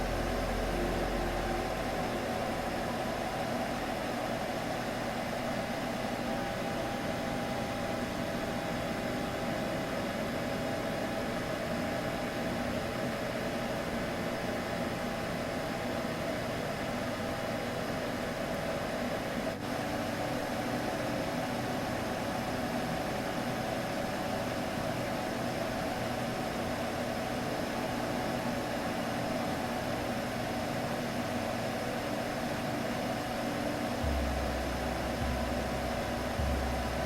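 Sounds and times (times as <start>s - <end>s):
droning hum of held tones: 0.0s - 37.0s
deep low rumble pulses: 34.0s - 37.0s.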